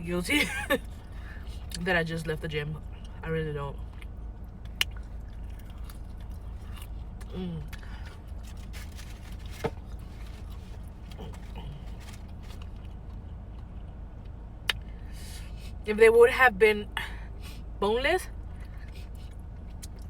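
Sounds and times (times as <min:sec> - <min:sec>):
steady low hum: 0:00.0 - 0:20.0
chewing chicken wings: 0:04.8 - 0:07.3.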